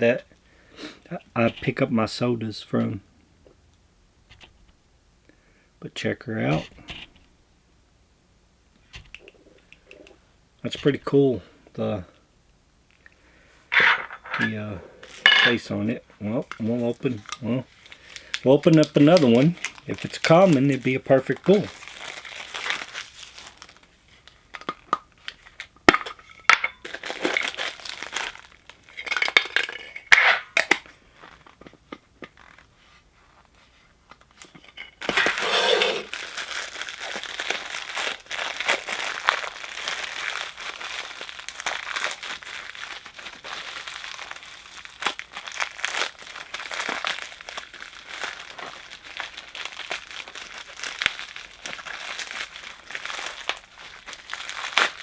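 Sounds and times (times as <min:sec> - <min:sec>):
plastic packaging crinkling: 0:13.8 - 0:15.7, 0:16.4 - 0:32.8, 0:33.4 - 0:55.0.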